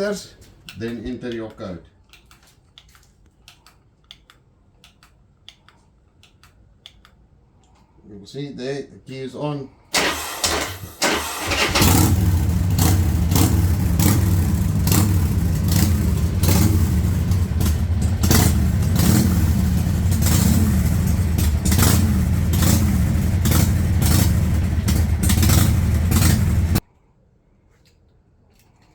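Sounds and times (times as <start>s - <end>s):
motorcycle engine idling: 10.0s - 26.8s.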